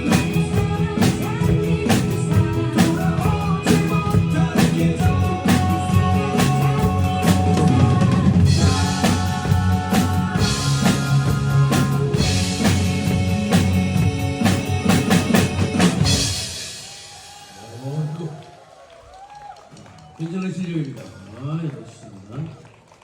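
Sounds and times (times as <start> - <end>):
drum kit playing fast beat: 0.0 - 18.1
backing music track: 0.0 - 18.3.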